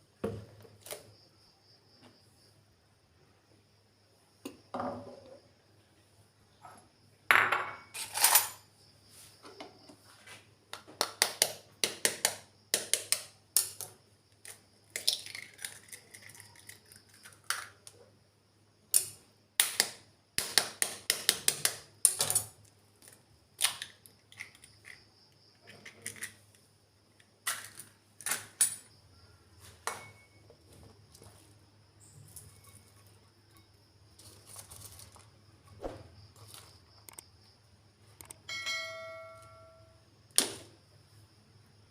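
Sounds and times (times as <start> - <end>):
utensils and dishes clinking: 7.6 - 8.6.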